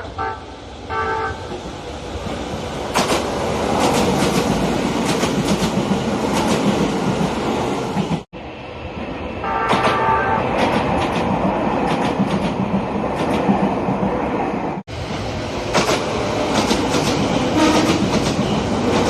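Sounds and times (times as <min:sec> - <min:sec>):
train horn blast: 0:00.0 - 0:01.5, 0:09.4 - 0:10.5, 0:17.6 - 0:18.0
train rumbling past: 0:00.0 - 0:19.0.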